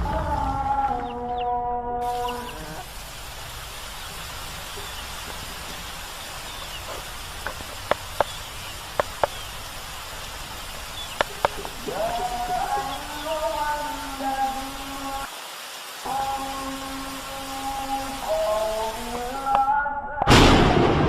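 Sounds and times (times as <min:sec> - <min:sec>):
background hiss: 0:02.0 - 0:20.6.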